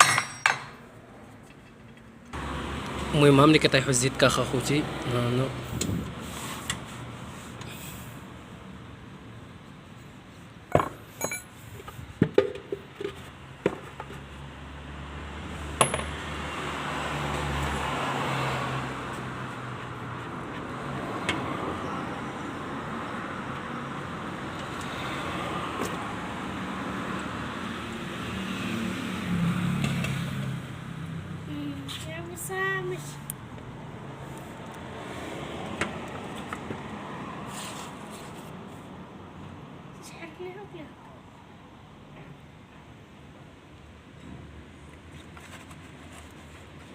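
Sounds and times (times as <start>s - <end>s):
metal tools clinking: 0.0s - 0.8s, 10.8s - 11.6s.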